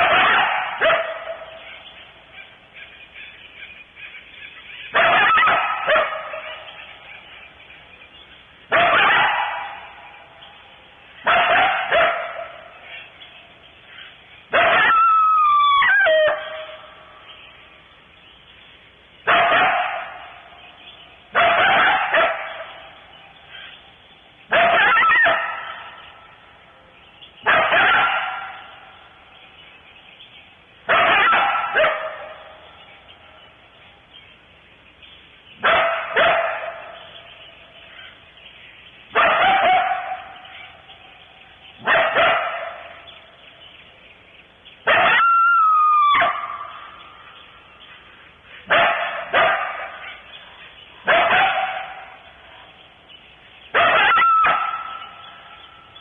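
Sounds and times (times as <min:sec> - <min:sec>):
coyote bark-howl: 0:00.0 - 0:03.8, 0:04.4 - 0:07.6, 0:08.7 - 0:17.4, 0:19.2 - 0:23.8, 0:24.4 - 0:29.3, 0:30.8 - 0:34.1, 0:35.6 - 0:38.3, 0:39.1 - 0:43.4, 0:44.8 - 0:52.8, 0:53.7 - 0:56.0
coyote barking: 0:00.0 - 0:17.7, 0:19.2 - 0:30.0, 0:30.7 - 0:34.1, 0:35.5 - 0:56.0.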